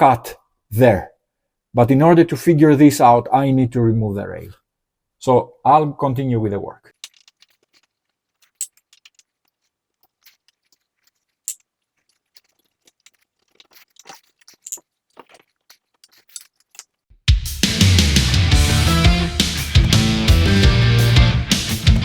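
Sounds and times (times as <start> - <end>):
hand tools clicking and scraping: 6.9 - 17.1.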